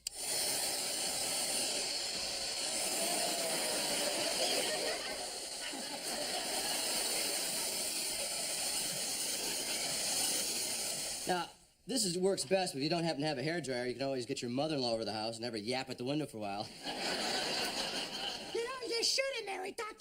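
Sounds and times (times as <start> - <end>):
hairdryer blowing: 0.0 - 11.4.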